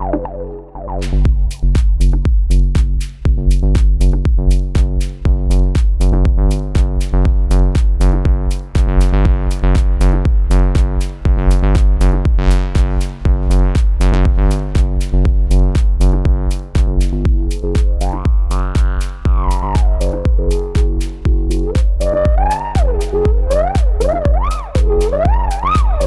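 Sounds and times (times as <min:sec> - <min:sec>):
synthesizer bass line: 0:00.0 - 0:26.0
drum machine beat: 0:01.0 - 0:26.0.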